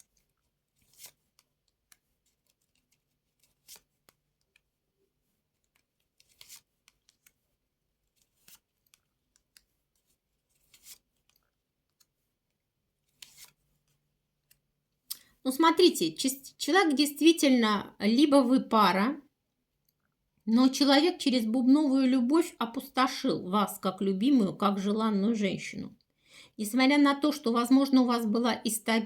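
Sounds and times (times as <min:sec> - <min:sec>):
playing cards swishing and tapping: 0:00.0 - 0:14.7.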